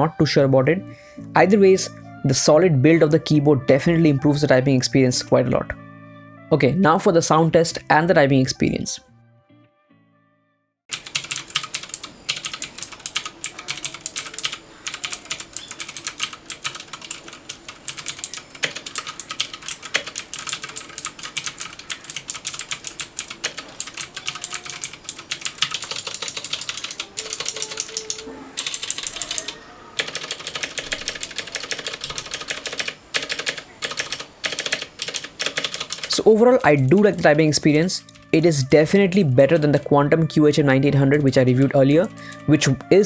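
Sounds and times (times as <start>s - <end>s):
clicky mechanical keyboard typing: 10.9s - 36.7s.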